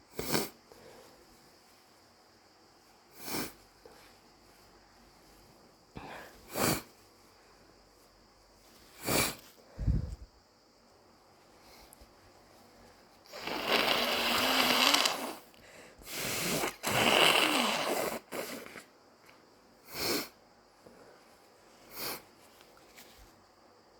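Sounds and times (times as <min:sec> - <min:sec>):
short nasal breaths: 0:13.3 - 0:18.9, 0:19.8 - 0:20.4, 0:21.9 - 0:22.3
wheezy gasp: 0:13.3 - 0:18.9
person sneezing: 0:16.1 - 0:18.8.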